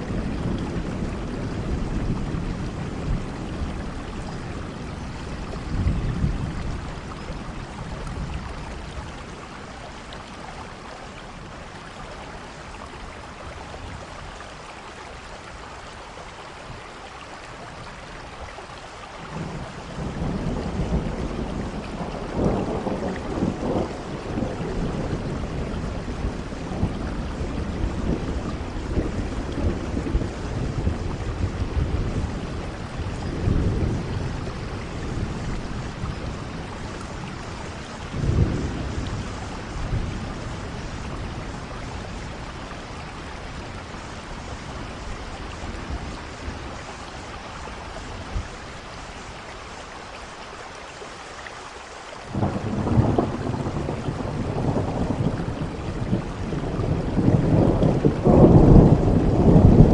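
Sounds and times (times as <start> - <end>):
rolling thunder: 0.0 - 9.4, 19.2 - 47.0, 52.3 - 59.9
steady rain: 0.0 - 59.9.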